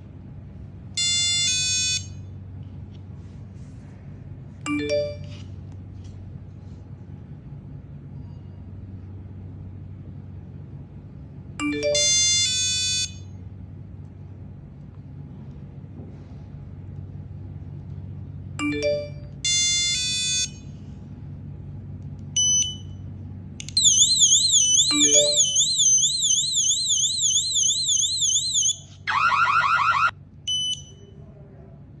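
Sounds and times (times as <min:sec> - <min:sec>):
electronic chimes and beeps: 0:23.8 - 0:28.0
fast electronic chirping: 0:23.8 - 0:28.8
warbling alarm siren: 0:23.8 - 0:30.2.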